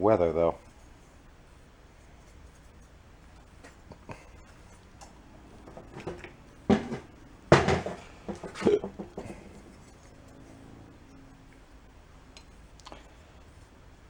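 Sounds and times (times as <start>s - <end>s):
metal parts clunking on workbench: 5.6s - 9.9s.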